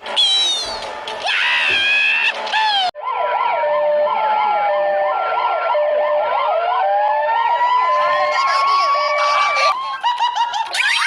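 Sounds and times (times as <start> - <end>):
rising and falling siren wail: 3.0 - 11.0
slow falling and climbing siren: 3.0 - 11.0.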